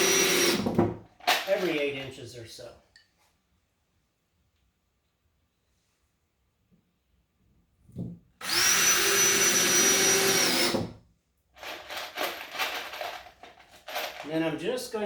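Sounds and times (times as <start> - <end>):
drill driver driving a screw: 0.0 - 0.7, 8.4 - 10.9
handling knocks and clatter: 1.2 - 1.8, 11.6 - 14.4.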